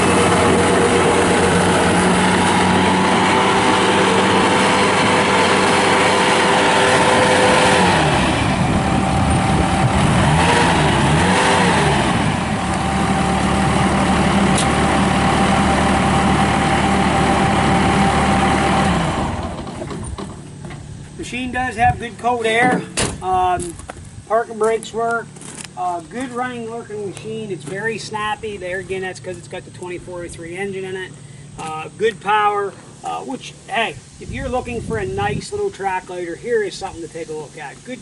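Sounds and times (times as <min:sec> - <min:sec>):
diesel engine running at high revs: 0:00.0 - 0:21.5.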